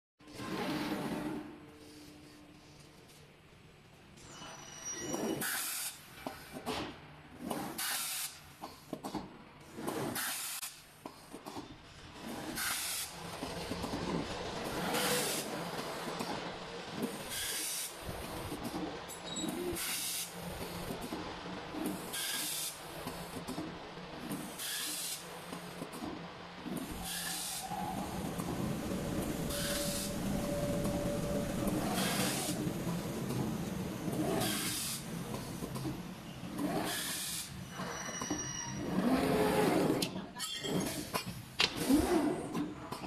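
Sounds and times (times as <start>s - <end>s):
pneumatic air hisses: 7.8s - 8.4s, 17.3s - 18.0s, 19.7s - 20.3s, 22.1s - 22.8s, 24.6s - 25.3s, 26.9s - 28.1s, 34.4s - 35.1s, 36.8s - 37.6s
steady machine hum: 26.2s - 34.4s.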